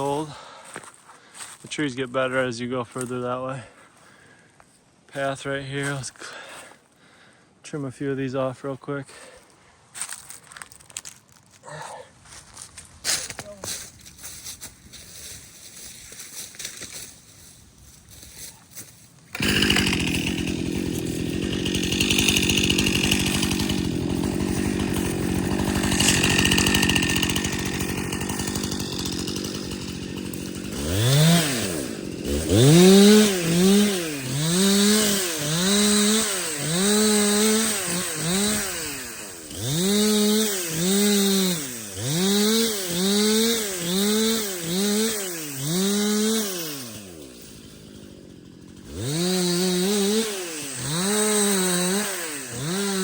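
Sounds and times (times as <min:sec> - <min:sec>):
chainsaw cutting wood: 0:19.3 - 0:53.0.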